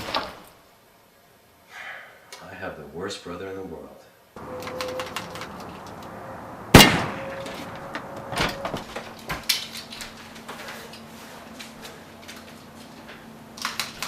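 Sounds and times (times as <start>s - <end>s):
loud metallic clang: 4.4s - 8.9s.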